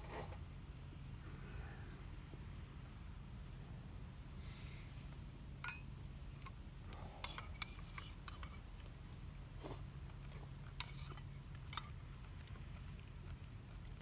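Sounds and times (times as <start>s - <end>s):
low steady rumble: 0.0s - 14.0s
utensils clinking on metal cookware: 5.6s - 6.2s, 7.2s - 8.6s, 10.8s - 12.0s.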